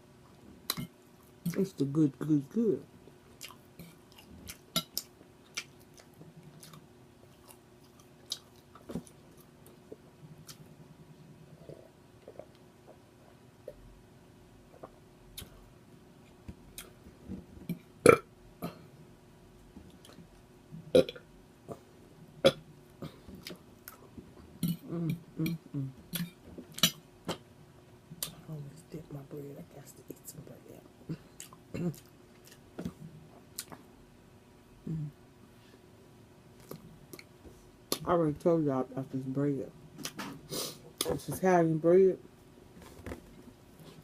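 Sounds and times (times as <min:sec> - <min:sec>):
person chewing food: 0:03.3 - 0:10.8, 0:16.7 - 0:17.0, 0:31.1 - 0:33.8, 0:36.6 - 0:37.3
low throat sounds: 0:24.6 - 0:26.0, 0:34.8 - 0:35.2.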